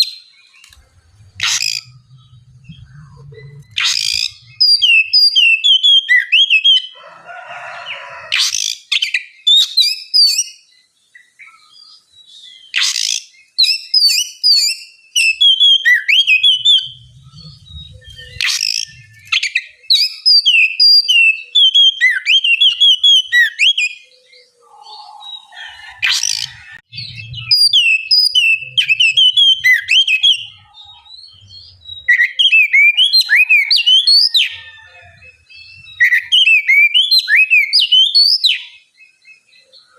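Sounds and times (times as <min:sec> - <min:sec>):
bird singing whistled phrases: 0:00.0 - 0:06.9, 0:12.4 - 0:38.8
sharp loud bird notes: 0:00.0 - 0:07.0.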